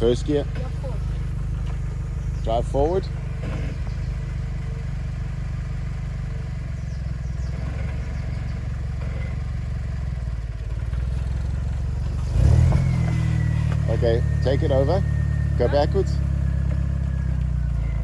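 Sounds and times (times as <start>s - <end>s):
vehicle engine pulling forward: 0.0s - 18.0s.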